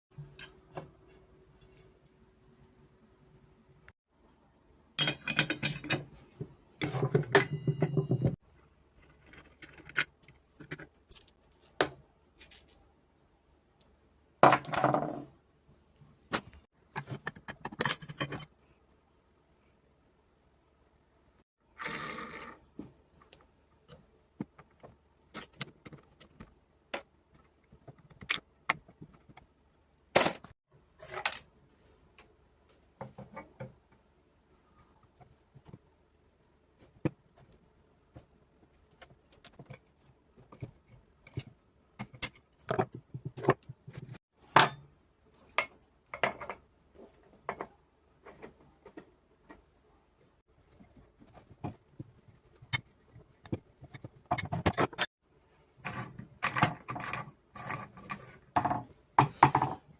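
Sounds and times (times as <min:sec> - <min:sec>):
small metal parts clinking: 0:09.2 - 0:12.8.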